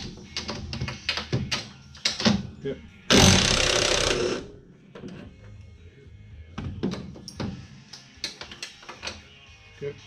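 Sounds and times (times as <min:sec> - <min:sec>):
power tool burst: 0:03.1 - 0:04.4
clicks and knocks of tools: 0:06.9 - 0:09.2.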